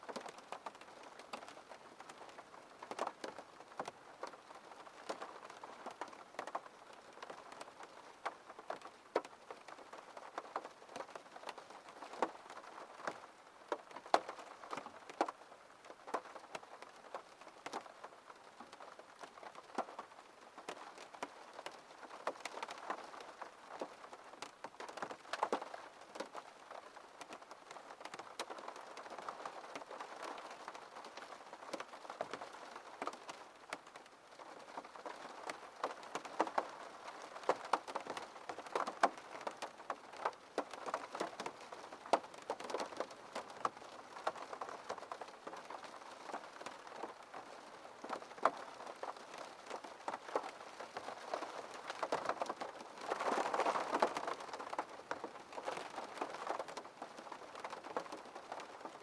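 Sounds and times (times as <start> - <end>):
raindrops tapping on glass: 18.7 - 59.0.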